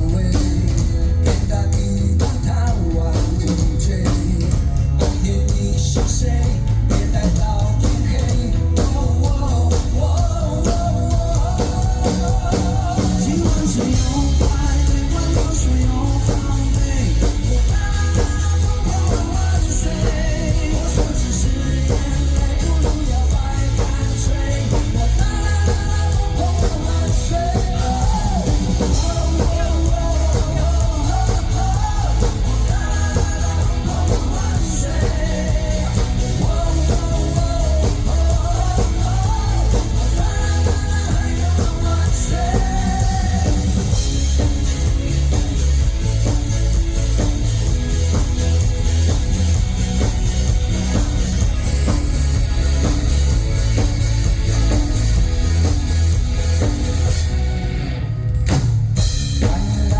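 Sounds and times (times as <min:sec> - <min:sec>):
person singing: 0:00.0 - 0:45.4
live rock band playing: 0:00.0 - 0:59.9.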